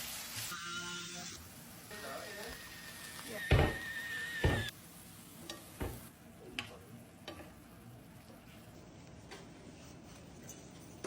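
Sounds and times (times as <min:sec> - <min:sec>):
food sizzling in a pan: 0:00.0 - 0:08.8.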